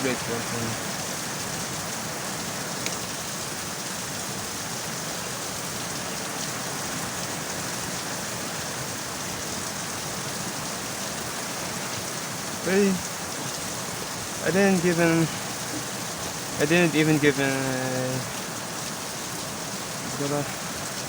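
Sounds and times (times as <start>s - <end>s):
rain: 0.0s - 21.0s
background hiss: 11.0s - 21.0s.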